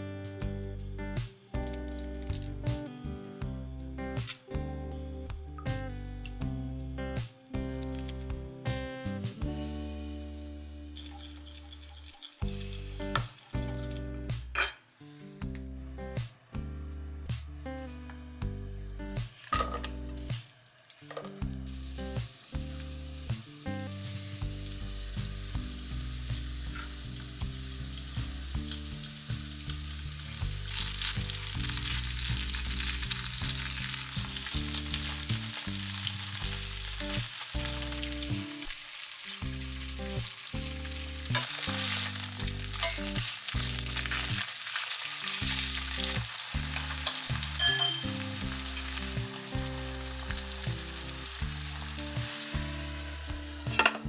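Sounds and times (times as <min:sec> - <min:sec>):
meat sizzling in a frying pan: 0:19.1 - 0:54.0.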